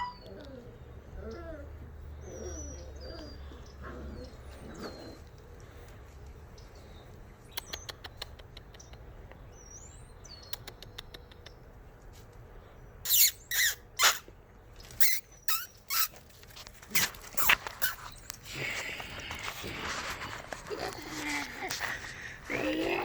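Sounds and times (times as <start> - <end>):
puppies squealing: 0.0 - 3.5, 13.1 - 14.3, 15.0 - 18.2.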